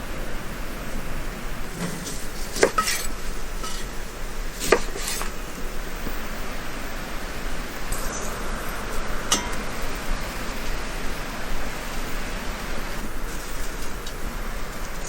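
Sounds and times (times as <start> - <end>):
steady background hiss: 0.0 - 15.0
metal cookware clinks: 1.7 - 3.9, 9.3 - 9.9.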